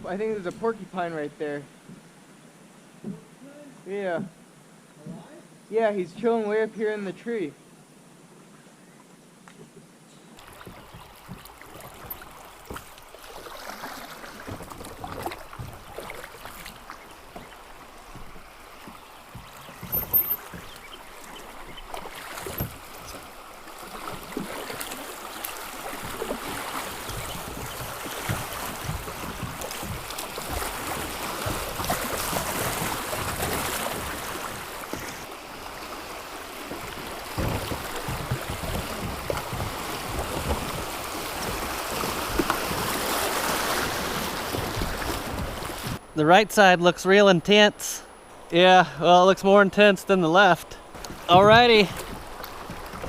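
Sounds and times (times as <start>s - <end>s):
paddle strokes: 9.5s - 46.4s, 49.5s - 53.0s
water splashing: 10.4s - 46.8s, 48.3s - 53.0s
rushing river water: 10.4s - 53.0s
knocks: 37.4s - 40.7s, 51.1s - 53.0s.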